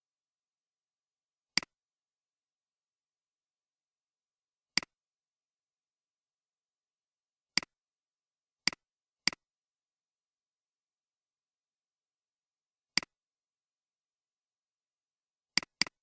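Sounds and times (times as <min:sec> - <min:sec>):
computer mouse clicks: 0:15.6 - 0:16.0.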